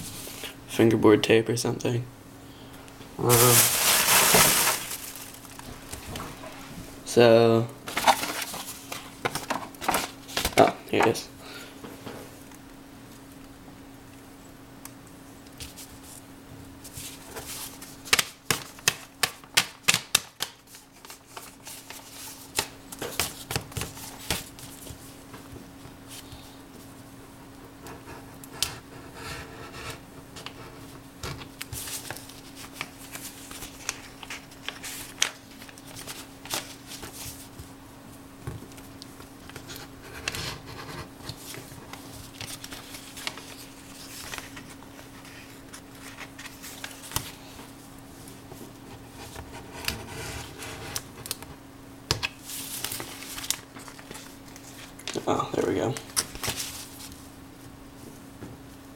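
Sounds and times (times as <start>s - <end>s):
paper envelope rustling: 3.2s - 6.6s, 7.9s - 10.7s, 16.9s - 25.2s, 31.6s - 37.6s, 41.2s - 47.8s, 52.3s - 57.3s.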